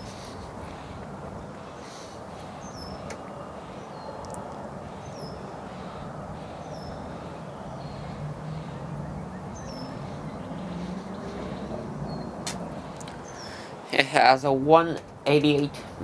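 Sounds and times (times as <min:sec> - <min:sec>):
low hum: 0:00.0 - 0:13.7
wind rushing over microphone: 0:00.0 - 0:16.0
small bird chirping: 0:01.8 - 0:03.1, 0:03.8 - 0:13.6.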